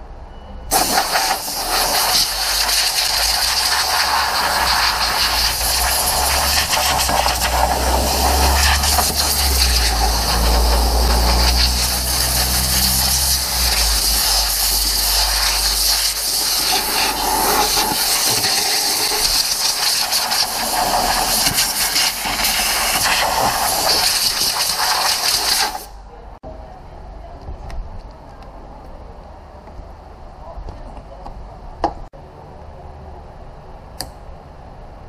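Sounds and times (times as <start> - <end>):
loud steady hissing: 0.7 - 26.1.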